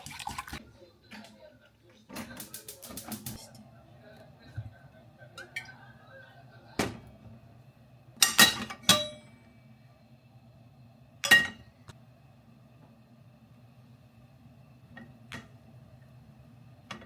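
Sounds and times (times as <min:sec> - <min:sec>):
kitchenware clinking and knocking: 0:08.2 - 0:09.3, 0:11.2 - 0:11.7.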